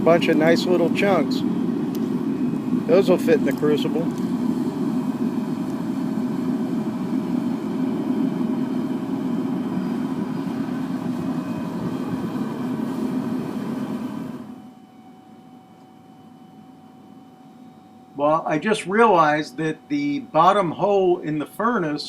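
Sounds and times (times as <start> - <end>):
burner flame and blower roaring: 0.0 - 14.7.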